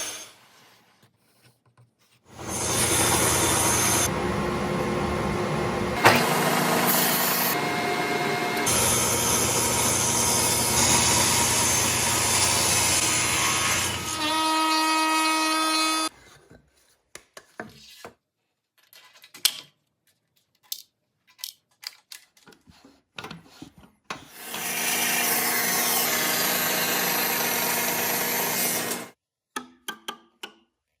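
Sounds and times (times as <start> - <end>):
power saw cutting wood: 2.3 - 16.1, 24.3 - 29.2.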